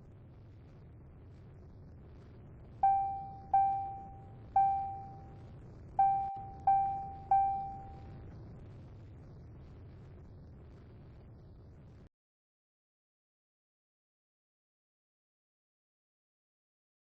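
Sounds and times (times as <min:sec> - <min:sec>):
bell-like ding: 0:02.8 - 0:05.2, 0:06.0 - 0:08.0.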